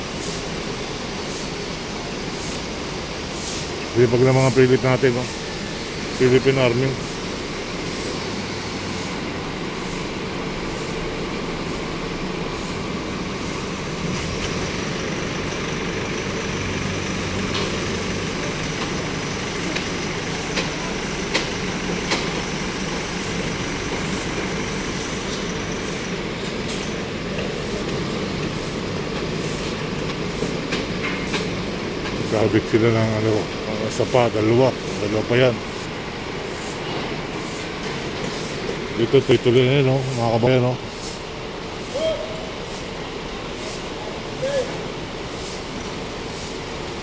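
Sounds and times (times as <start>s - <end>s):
vehicles and road noise: 0.0s - 47.0s.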